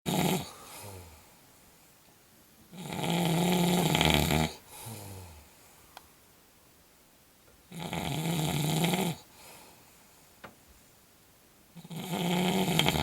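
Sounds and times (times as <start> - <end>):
woman snoring heavily: 0.1 - 1.2, 2.7 - 5.4, 7.7 - 9.3, 11.8 - 13.0.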